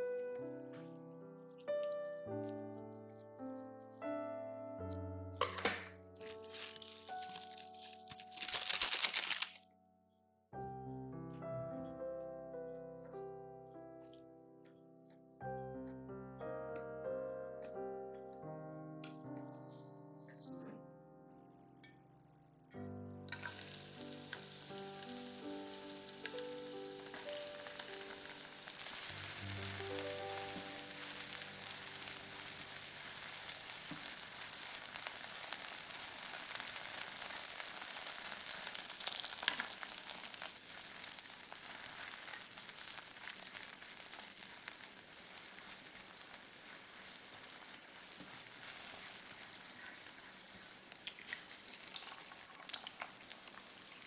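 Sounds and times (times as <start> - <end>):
food sizzling in a pan: 6.2 - 9.6, 23.3 - 54.0.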